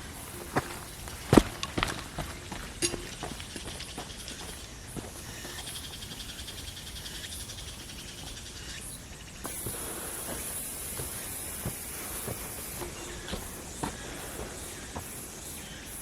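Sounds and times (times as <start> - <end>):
footsteps: 0.0 - 7.0, 9.4 - 16.0
insects chirring: 0.0 - 16.0.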